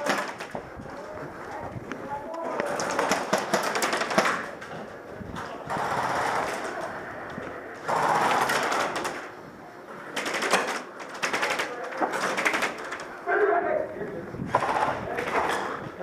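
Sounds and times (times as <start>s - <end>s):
rapid airsoft gun shots: 3.0s - 4.6s, 5.7s - 6.8s, 7.8s - 9.3s, 14.5s - 15.8s.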